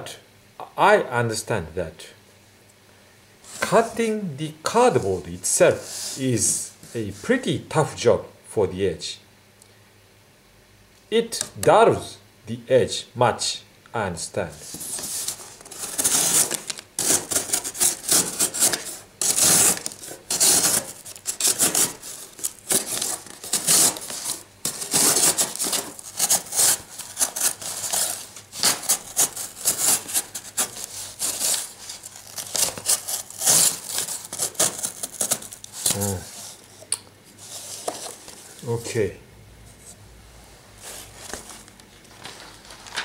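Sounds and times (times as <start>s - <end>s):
knife cutting cardboard: 14.6s - 36.5s.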